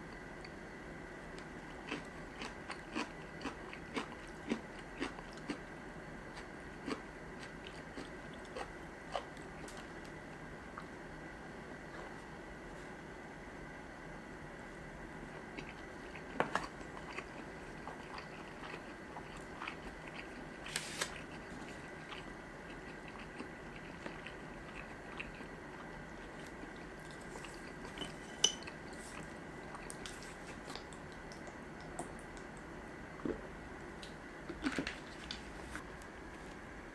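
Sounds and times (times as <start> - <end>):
person chewing: 1.6 - 5.7, 6.3 - 9.9, 15.5 - 33.3.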